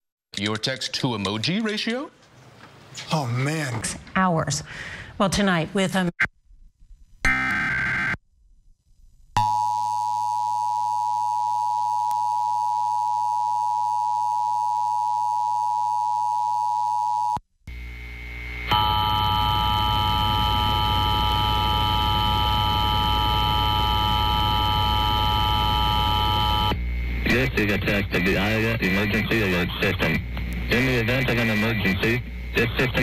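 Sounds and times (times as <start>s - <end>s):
low hum: 17.7s - 33.0s.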